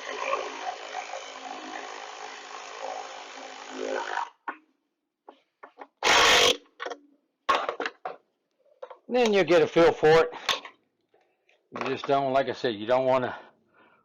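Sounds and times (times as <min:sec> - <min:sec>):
power ratchet running: 0:00.0 - 0:04.2, 0:06.0 - 0:06.6.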